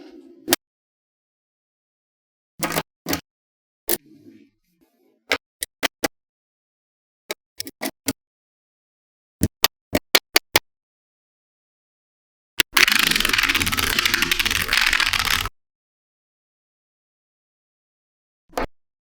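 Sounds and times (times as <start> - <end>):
magnetic balls clicking together: 12.6 - 15.5.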